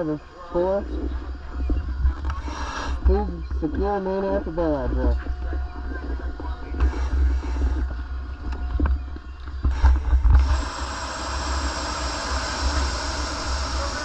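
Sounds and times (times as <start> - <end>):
air hissing: 2.4 - 3.3, 9.6 - 14.0.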